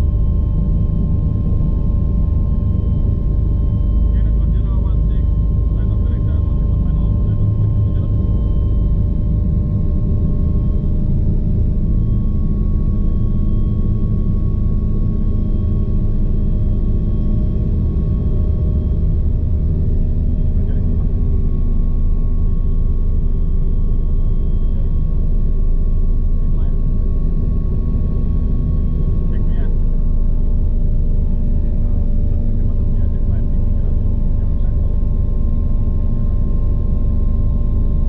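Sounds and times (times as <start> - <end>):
helicopter rotor and engine rumble: 0.0 - 38.0
turbine whine: 0.0 - 38.0.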